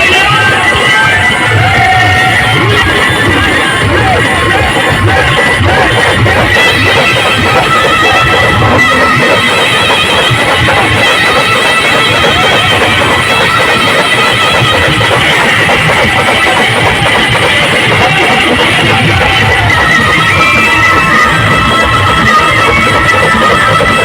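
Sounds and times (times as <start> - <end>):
band music over sound system: 0.0 - 24.0.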